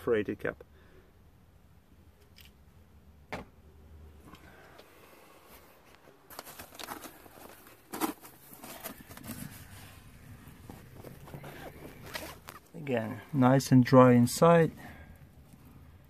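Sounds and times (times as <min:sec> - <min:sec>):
rustling and scraping: 0:05.4 - 0:13.2.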